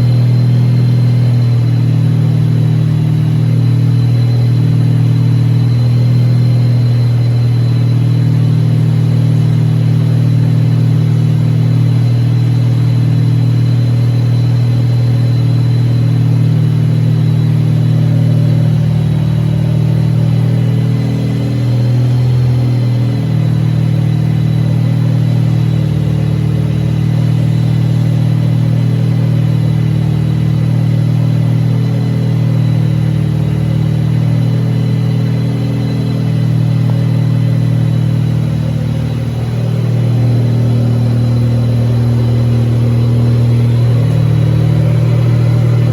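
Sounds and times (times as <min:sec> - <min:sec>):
rotary engine running: 0:00.0 - 0:45.9.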